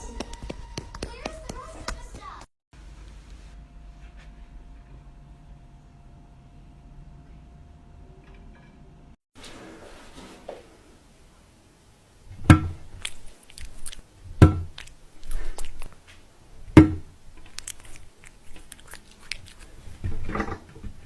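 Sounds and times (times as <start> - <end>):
rustling: 12.3 - 21.0
loud sharp knocks: 12.4 - 12.8, 16.8 - 17.1.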